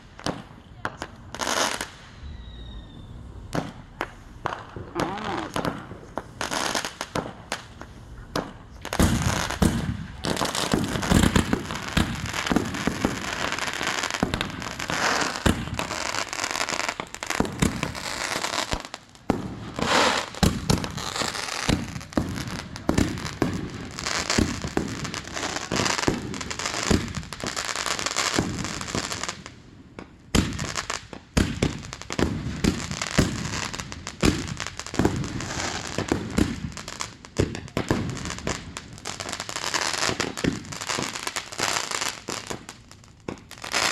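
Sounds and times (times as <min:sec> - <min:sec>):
fireworks bangs: 0:00.0 - 0:43.9
fireworks crackling: 0:00.0 - 0:43.9.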